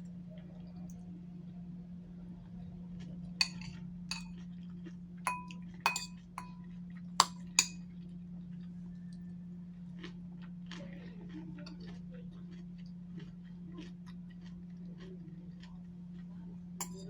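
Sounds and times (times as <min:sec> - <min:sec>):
steady low hum: 0:00.0 - 0:17.0
utensils clinking against dish: 0:03.4 - 0:04.4, 0:05.3 - 0:06.6, 0:07.2 - 0:07.8.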